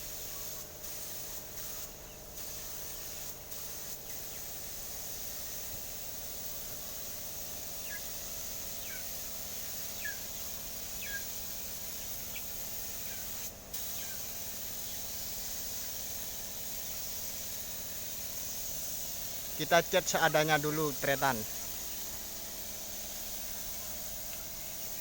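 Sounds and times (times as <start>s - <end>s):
steady high hiss: 1.0s - 25.0s
bird chirping: 11.0s - 11.2s.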